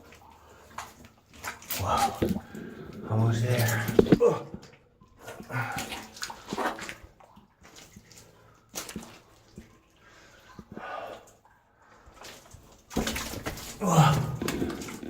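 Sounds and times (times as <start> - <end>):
water splashing and dripping: 0.0 - 15.0.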